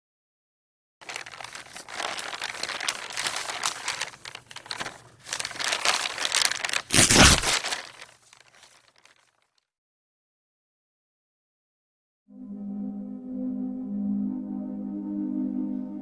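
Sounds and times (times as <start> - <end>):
paper crinkling and rustling: 1.0 - 9.6.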